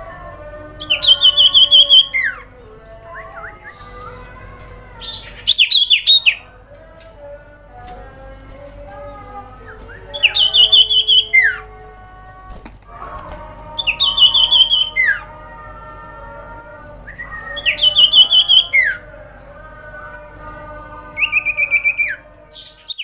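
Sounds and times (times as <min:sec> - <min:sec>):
bird singing trilled phrases: 0:05.0 - 0:06.4, 0:17.2 - 0:19.0, 0:21.2 - 0:23.0.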